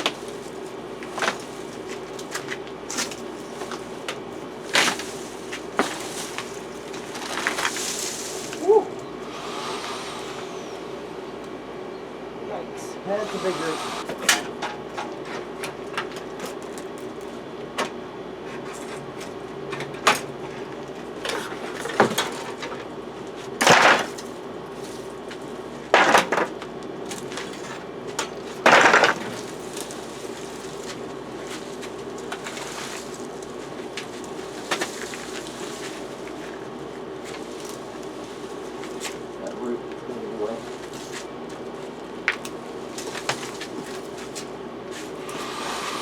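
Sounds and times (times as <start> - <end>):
steady low hum: 0.0 - 46.0
harsh scraping strokes: 13.1 - 14.2.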